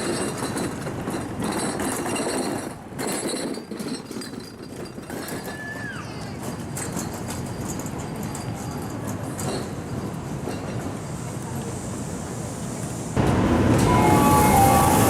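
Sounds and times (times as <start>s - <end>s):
high squeal: 13.7s - 15.0s.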